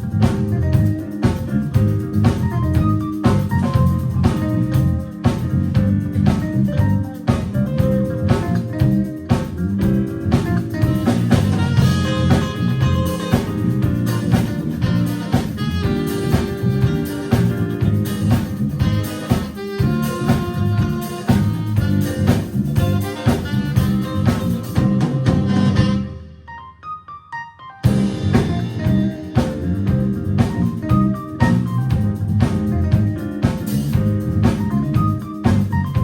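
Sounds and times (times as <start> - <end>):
drum kit beat: 0.0 - 26.3, 27.8 - 36.0
bass and chords: 0.0 - 26.4, 27.8 - 36.0
saxophone melody: 10.7 - 26.6, 27.8 - 32.2.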